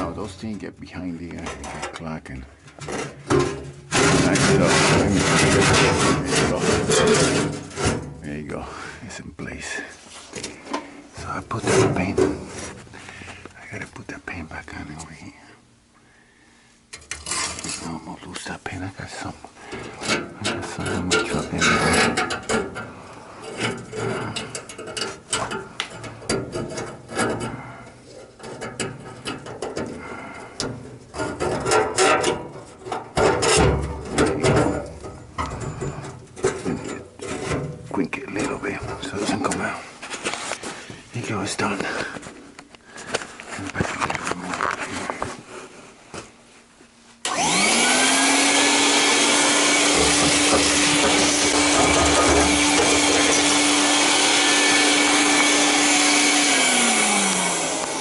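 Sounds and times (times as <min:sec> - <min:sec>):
heavy metal clunk: 0:02.6 - 0:08.2, 0:49.9 - 0:53.5
vacuum cleaner motor whining: 0:47.3 - 0:58.0.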